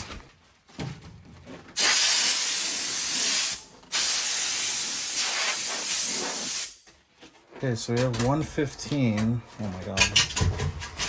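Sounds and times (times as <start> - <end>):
loud rushing hiss: 1.8 - 6.8.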